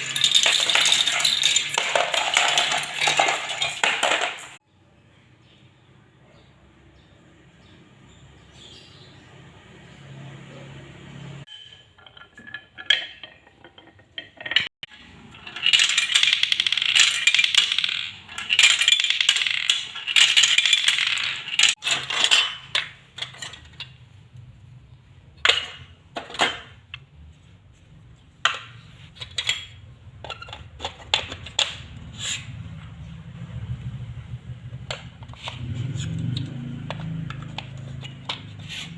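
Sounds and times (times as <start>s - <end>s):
marbles clattering through marble run: 0.0s - 4.6s, 11.5s - 23.7s.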